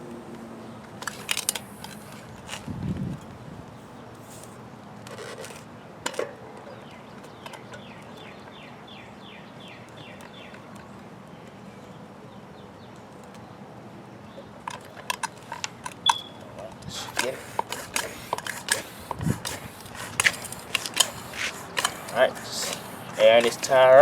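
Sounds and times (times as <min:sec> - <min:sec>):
outdoor background noise: 0:00.0 - 0:24.0
handling clicks: 0:00.9 - 0:02.7, 0:14.7 - 0:24.0.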